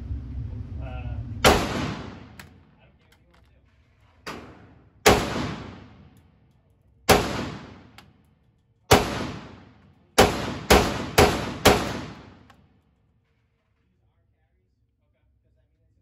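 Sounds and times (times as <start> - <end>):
echoing gunshots: 1.4 - 2.8, 4.3 - 6.2, 7.1 - 8.0, 8.9 - 12.5.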